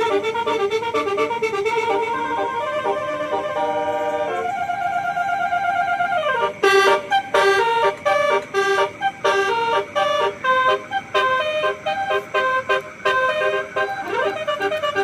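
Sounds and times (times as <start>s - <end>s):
multi-tone bus horn tune: 0.0s - 15.0s.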